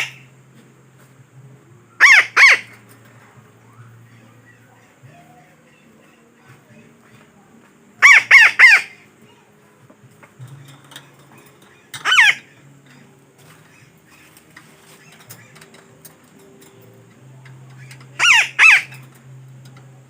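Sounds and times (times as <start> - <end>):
parakeet squawking: 2.0 - 2.8, 8.0 - 9.0, 11.7 - 16.0, 17.5 - 19.2.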